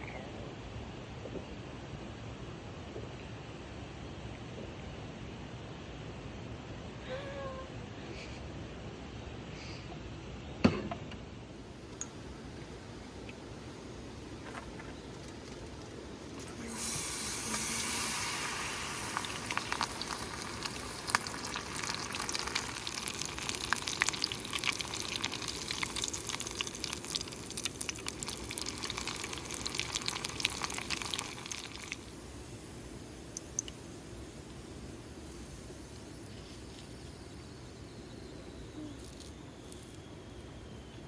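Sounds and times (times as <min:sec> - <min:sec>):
oil crackling and popping: 0:15.2 - 0:36.4
food sizzling in hot oil: 0:16.4 - 0:36.4.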